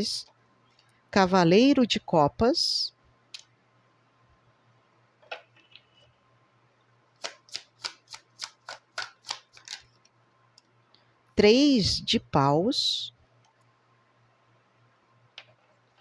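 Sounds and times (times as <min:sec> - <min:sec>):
cards being shuffled: 0:07.2 - 0:10.0.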